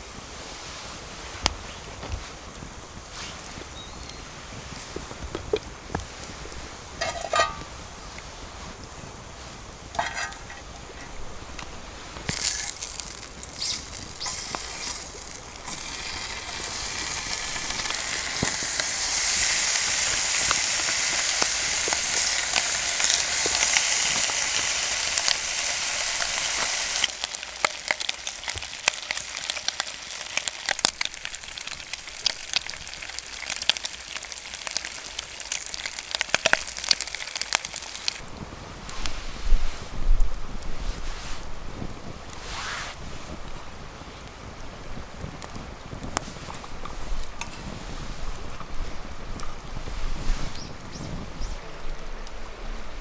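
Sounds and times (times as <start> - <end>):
pops and crackles: 9.9 - 39.1
food sizzling in a pan: 12.2 - 38.2.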